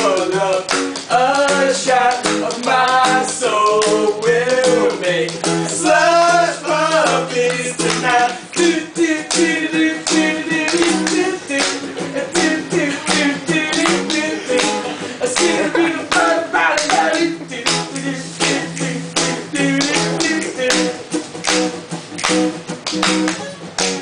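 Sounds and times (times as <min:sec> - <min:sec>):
percussive taps on guitar: 0:00.0 - 0:05.6, 0:12.4 - 0:14.8, 0:15.4 - 0:24.0
person singing: 0:00.0 - 0:21.0
acoustic guitar strumming: 0:00.0 - 0:24.0.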